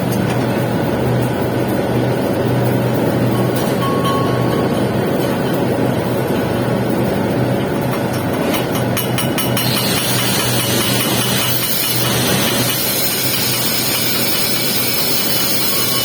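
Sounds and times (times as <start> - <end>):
low hum of welding equipment: 0.0 - 16.0
arc welding noise: 5.0 - 16.0.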